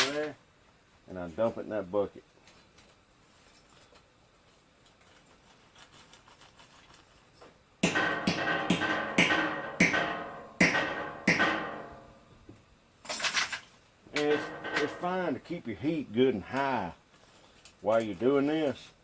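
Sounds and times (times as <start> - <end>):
metal tool clanging on bucket: 7.8 - 12.2, 14.1 - 15.4.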